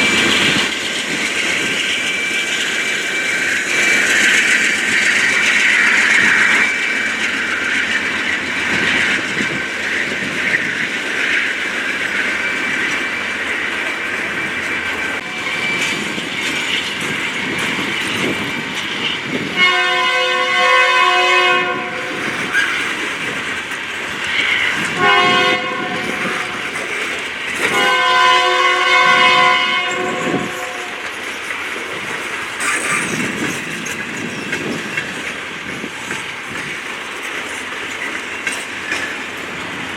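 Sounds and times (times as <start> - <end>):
train rolling on rails: 0.0 - 39.9
locomotive horn blasts: 19.5 - 22.3, 25.0 - 26.8, 27.7 - 31.1.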